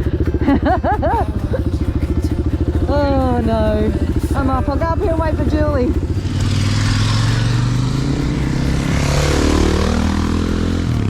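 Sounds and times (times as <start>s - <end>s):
motorcycle engine droning: 0.0s - 11.0s.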